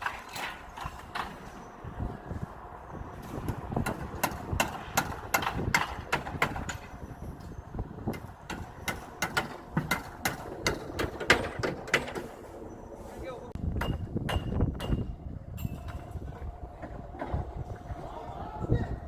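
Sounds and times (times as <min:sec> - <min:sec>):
hammer blows on wood: 0:13.6 - 0:15.2.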